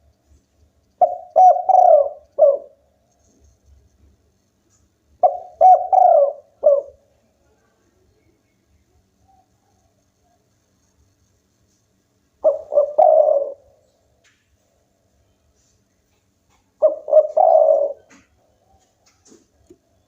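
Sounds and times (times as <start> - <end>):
dove cooing: 1.0 - 2.8, 5.2 - 7.1, 12.4 - 13.9, 16.8 - 19.5.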